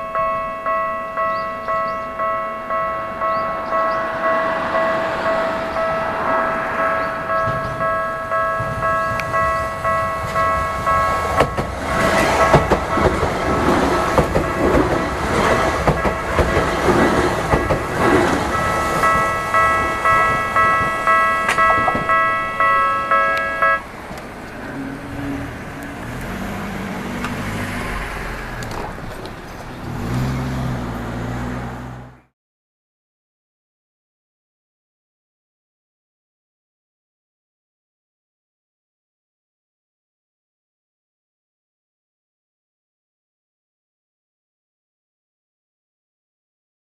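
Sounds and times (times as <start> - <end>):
level-crossing alarm ringing: 0.0 - 25.4
train wheels rumbling on rails: 2.7 - 32.2.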